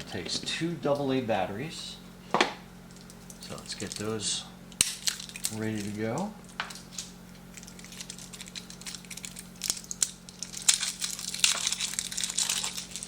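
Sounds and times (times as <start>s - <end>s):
plastic packaging crinkling and tearing: 2.9s - 4.2s, 4.8s - 13.0s.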